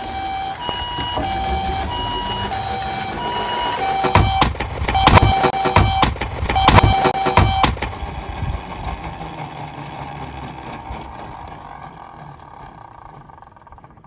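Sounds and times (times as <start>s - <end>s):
toy car clack: 0.6s - 13.6s
toy cars rolling on plastic track: 6.2s - 14.0s.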